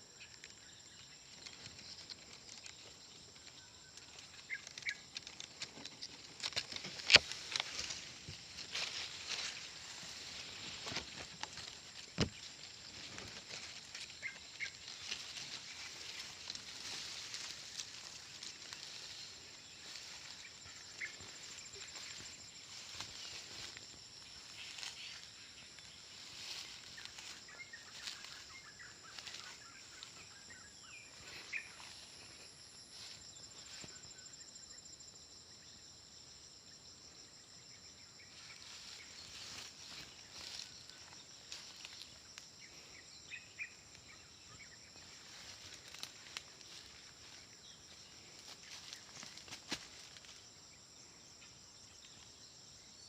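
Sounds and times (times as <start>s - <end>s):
faint bird chirps: 0.0s - 35.1s, 37.7s - 50.4s
clicks and rustles: 1.2s - 19.3s.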